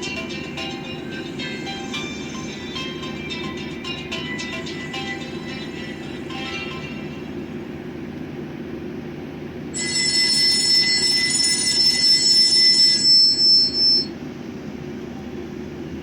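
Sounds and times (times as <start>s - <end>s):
low steady hum: 0.0s - 15.5s
shrill phone alert tone: 9.8s - 14.2s.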